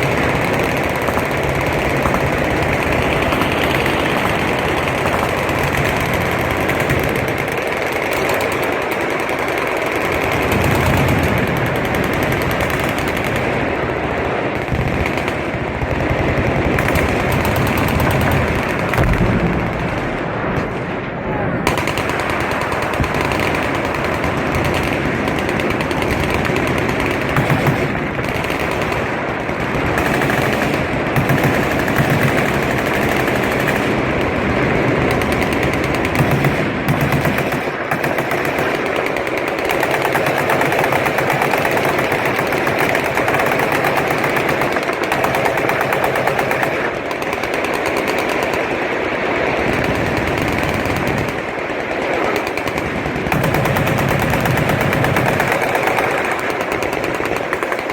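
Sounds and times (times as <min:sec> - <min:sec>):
machine guns firing: 0:00.0 - 0:57.9.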